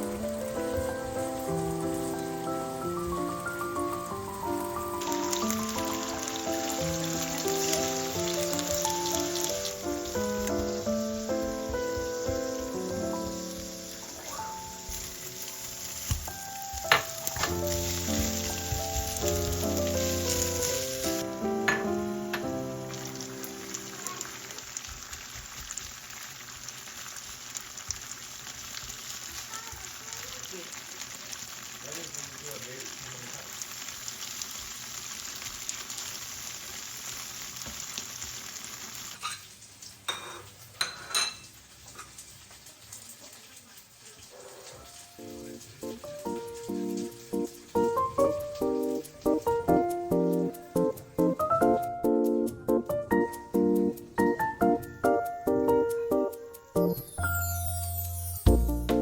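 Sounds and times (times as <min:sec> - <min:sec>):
background music: 0:00.0 - 0:15.7, 0:16.3 - 0:23.7, 0:45.2 - 0:59.0
food sizzling in frying pan: 0:00.0 - 0:59.0
utensil striking pan: 0:16.0 - 0:20.9, 0:21.6 - 0:22.6.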